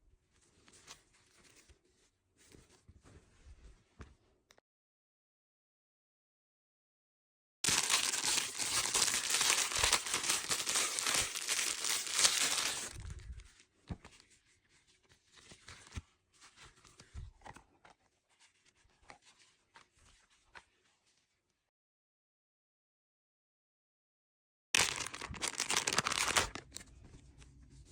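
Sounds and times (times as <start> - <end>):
packaging torn open and crinkled: 7.7 - 13.1, 24.8 - 26.8.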